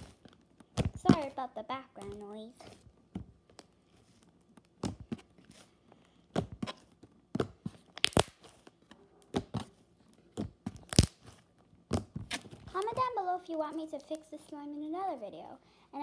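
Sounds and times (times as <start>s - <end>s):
slime popping and crackling: 6.3s - 8.6s, 10.4s - 13.0s.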